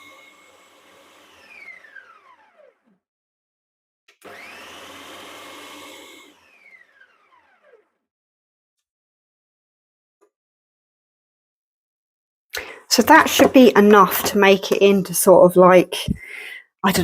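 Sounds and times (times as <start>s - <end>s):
food mixer motor whine: 0.0s - 3.0s, 4.1s - 8.1s.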